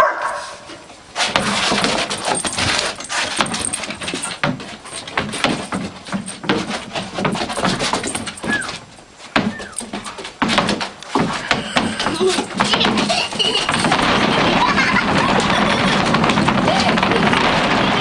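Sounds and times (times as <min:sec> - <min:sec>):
dog scrabbling and clattering: 0:00.3 - 0:18.0
dog whining: 0:08.4 - 0:08.8, 0:09.4 - 0:09.9.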